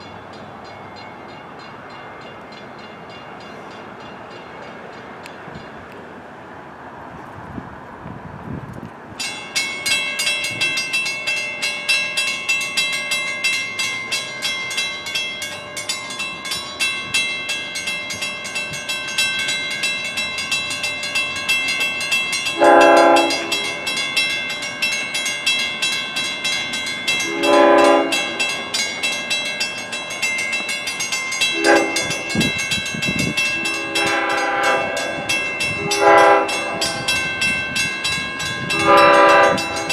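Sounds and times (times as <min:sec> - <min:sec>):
bell ringing rapidly: 0:09.2 - 0:39.9
train horn blasts: 0:22.5 - 0:23.9, 0:27.2 - 0:28.6, 0:31.5 - 0:32.6, 0:33.4 - 0:37.2, 0:38.6 - 0:39.9.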